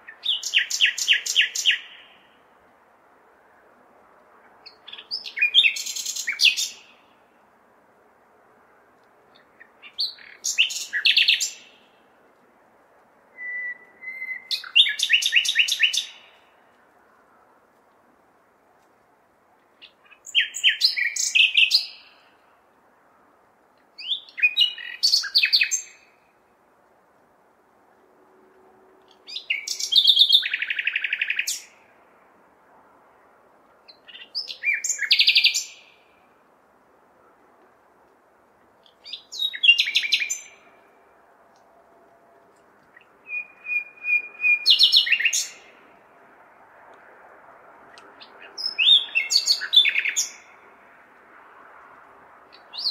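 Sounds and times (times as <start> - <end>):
nightingale singing: 0.0 - 2.4, 4.6 - 7.2, 9.3 - 12.0, 13.3 - 16.6, 19.8 - 22.4, 24.0 - 26.3, 29.1 - 31.8, 33.9 - 36.2, 38.8 - 40.9, 42.9 - 45.8, 48.0 - 50.6, 52.5 - 52.9
faint city hum: 0.0 - 52.9.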